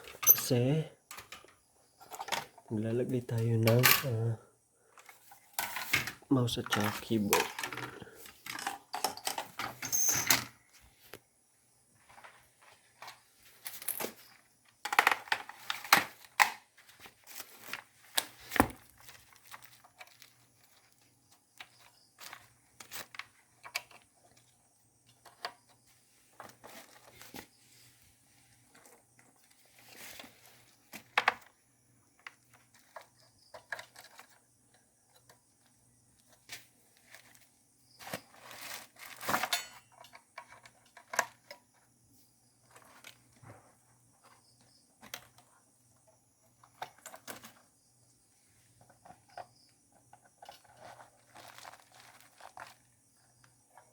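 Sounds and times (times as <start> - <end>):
computer parts clicking and knocking: 3.3 - 4.3, 5.0 - 10.5, 14.8 - 16.6.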